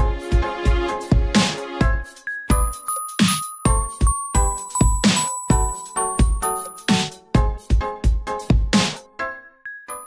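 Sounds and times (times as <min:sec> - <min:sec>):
electronic phone ringtone: 0:02.0 - 0:06.9.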